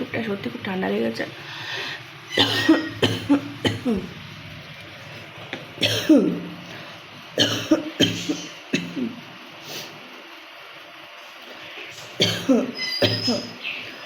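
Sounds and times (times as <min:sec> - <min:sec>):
woman coughing: 0:02.4 - 0:04.1, 0:05.8 - 0:06.5, 0:07.4 - 0:09.2, 0:12.2 - 0:13.5.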